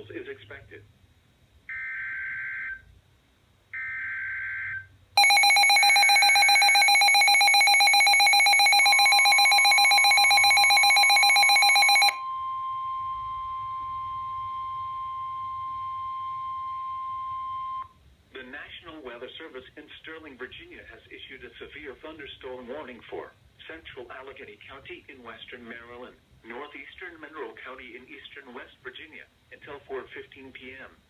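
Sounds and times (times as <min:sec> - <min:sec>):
harsh two-tone attention signal: 0:05.2 - 0:17.9.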